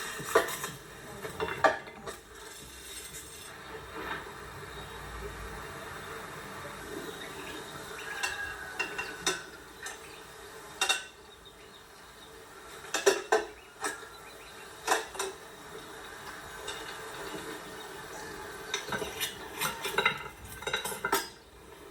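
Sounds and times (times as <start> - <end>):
cutlery clinking on dishes: 0.0 - 4.3, 8.0 - 10.2, 10.8 - 11.2, 12.8 - 14.2, 14.8 - 15.4, 18.7 - 21.5.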